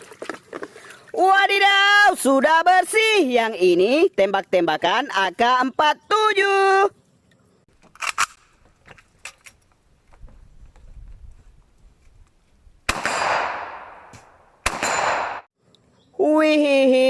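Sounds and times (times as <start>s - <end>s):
toy gunshot bang: 12.9s - 15.5s.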